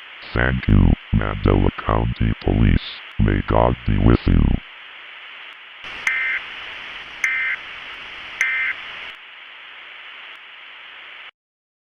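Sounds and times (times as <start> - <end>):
static hiss: 0.0 - 11.3
digital data tone bursts: 6.0 - 6.4.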